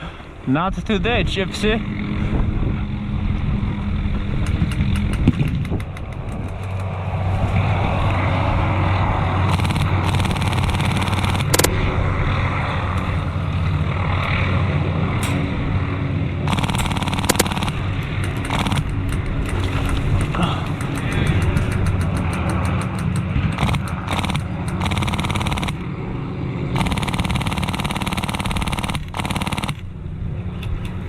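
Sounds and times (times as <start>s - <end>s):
steady low hum: 0.0s - 31.0s
airsoft gun rapid shots: 9.5s - 11.7s, 16.5s - 19.0s, 23.6s - 25.8s, 26.8s - 29.8s
sharp crack: 9.5s - 11.8s, 16.5s - 25.9s.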